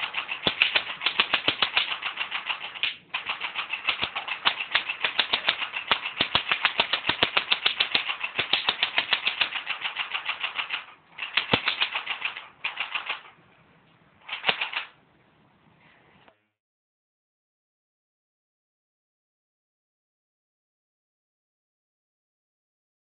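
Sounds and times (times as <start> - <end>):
bb gun firing full-auto: 0.0 - 13.3, 14.2 - 15.0.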